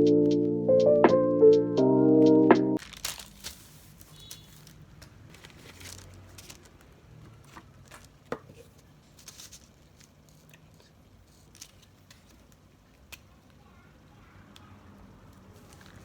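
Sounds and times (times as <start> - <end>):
packaging rustling and crinkling: 2.8 - 12.7, 15.6 - 16.0.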